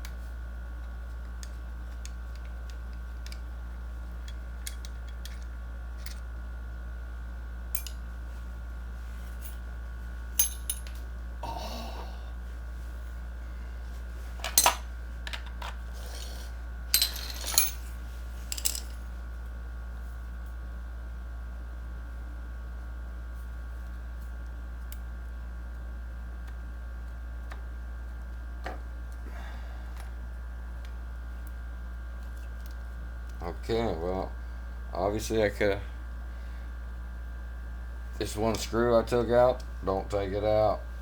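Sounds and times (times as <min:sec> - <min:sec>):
metal screws and tools clinking: 0:17.0 - 0:17.9.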